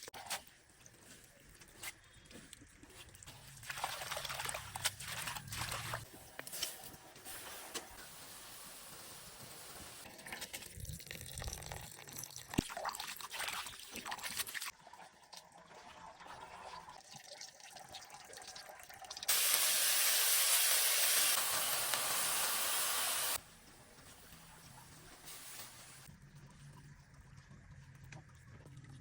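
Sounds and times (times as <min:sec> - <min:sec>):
water pouring in a stream: 0:03.3 - 0:06.1, 0:10.0 - 0:23.4.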